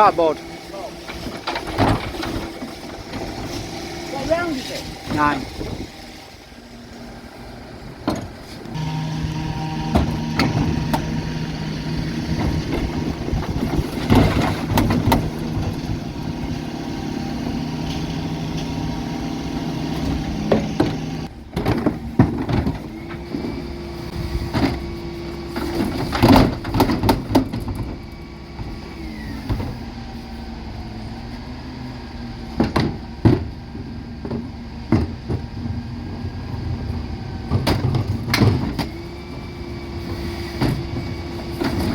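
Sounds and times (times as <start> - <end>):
wheelie bins knocking and clattering: 0.0 - 5.8, 8.0 - 23.7, 24.4 - 29.8, 32.5 - 36.0, 37.4 - 41.9
hydraulic whine: 0.0 - 41.9
truck engine humming: 0.0 - 41.9.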